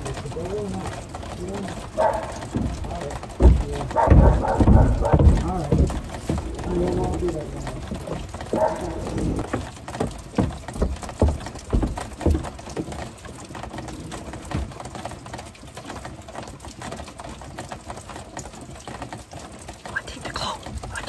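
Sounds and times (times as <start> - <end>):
rain pattering and dripping: 0.0 - 21.0
dull low thuds: 1.8 - 13.2.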